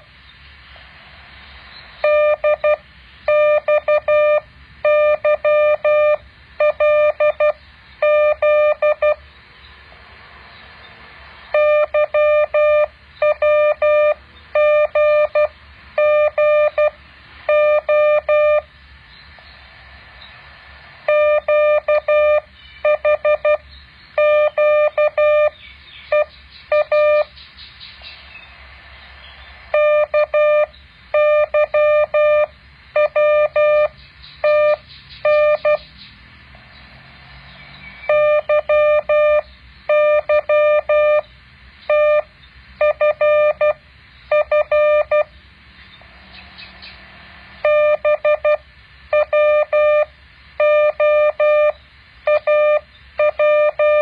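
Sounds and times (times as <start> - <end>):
faint hiss: 0.0 - 22.8, 23.6 - 38.1, 45.3 - 50.6
morse code beeps: 2.0 - 9.2, 11.5 - 18.7, 21.1 - 23.6, 24.2 - 27.3, 29.7 - 35.8, 38.1 - 41.3, 41.9 - 45.3, 47.6 - 54.0.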